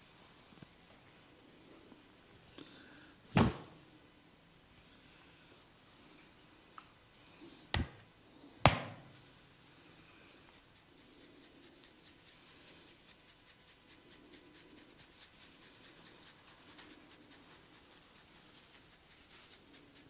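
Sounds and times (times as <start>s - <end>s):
sharp hand slaps: 7.7s - 8.0s, 8.6s - 9.1s.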